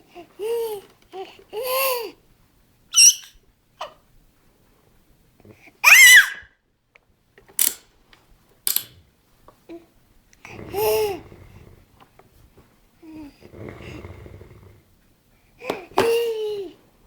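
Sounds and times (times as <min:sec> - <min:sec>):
baby squealing and babbling: 0:02.9 - 0:03.4, 0:05.8 - 0:06.5.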